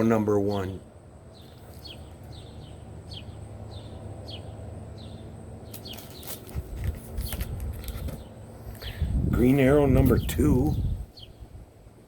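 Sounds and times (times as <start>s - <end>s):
bird chirping: 0.0s - 6.5s, 10.2s - 11.6s
paper rustling and light knocks: 5.7s - 8.3s.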